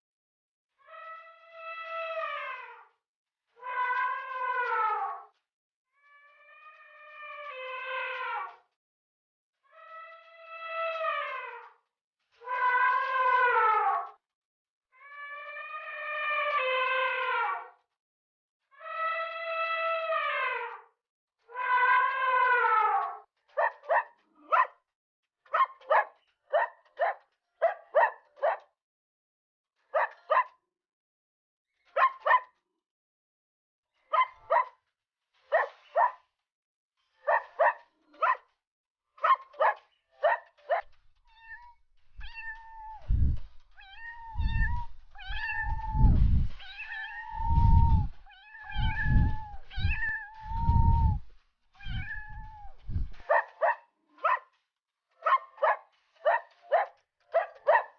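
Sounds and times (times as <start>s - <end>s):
cat meowing: 41.3s - 51.2s, 51.8s - 53.2s.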